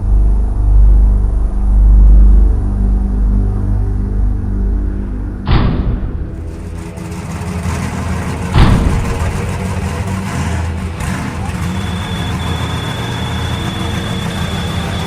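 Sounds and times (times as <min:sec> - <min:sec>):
truck engine idling: 0:05.2 - 0:15.0
loud thump: 0:05.4 - 0:06.6, 0:08.5 - 0:09.4.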